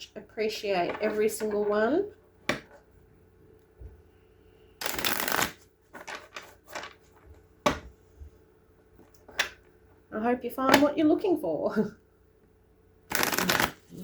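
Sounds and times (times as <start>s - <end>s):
cards being shuffled: 4.8s - 7.0s, 13.1s - 14.0s
cards tapping and clicking: 13.1s - 13.8s.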